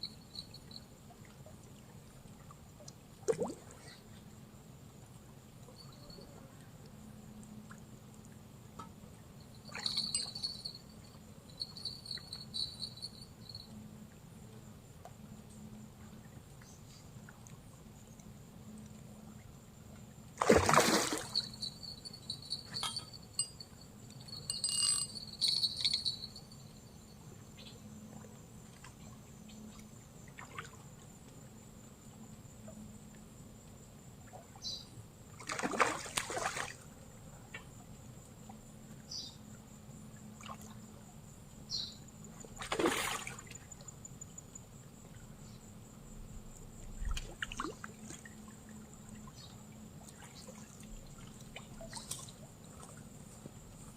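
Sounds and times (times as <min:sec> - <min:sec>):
short water splashes: 0:03.2 - 0:04.0, 0:20.4 - 0:21.6, 0:35.4 - 0:36.8, 0:42.5 - 0:43.6, 0:47.0 - 0:48.4
high insect buzz: 0:20.4 - 0:23.5.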